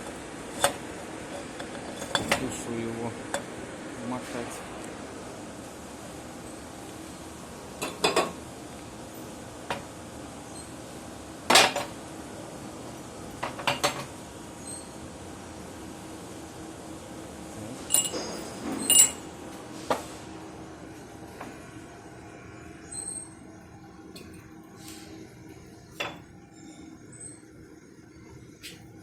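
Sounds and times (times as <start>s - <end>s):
metal tools clinking and knocking: 1.4s - 2.6s, 17.9s - 19.2s.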